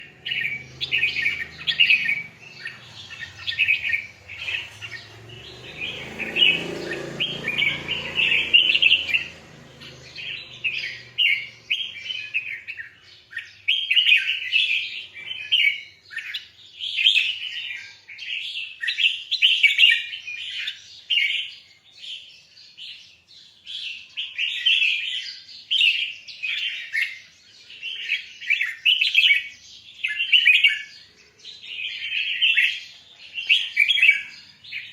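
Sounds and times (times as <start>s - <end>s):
bird chirping song: 0.0s - 34.9s.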